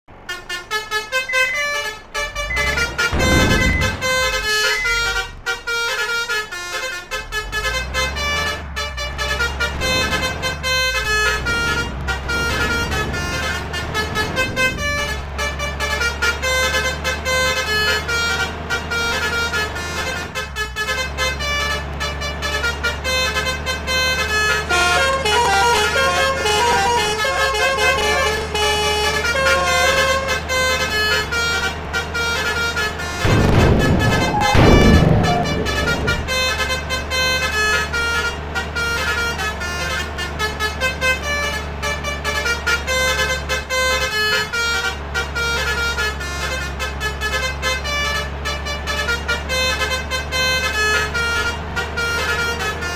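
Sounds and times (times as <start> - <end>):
low engine rumble: 0.0 - 52.9
musical air horns playing tunes: 0.3 - 52.9.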